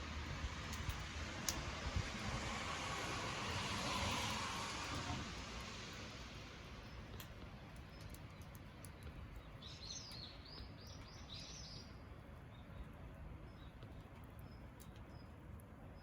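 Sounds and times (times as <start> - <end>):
campfire crackling: 0.2 - 2.2.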